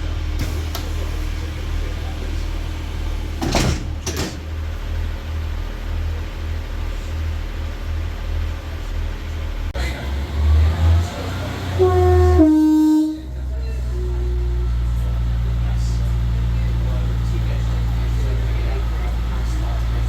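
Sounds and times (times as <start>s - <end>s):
diesel railbus idling: 0.0s - 20.0s
train horn held note: 11.8s - 15.0s.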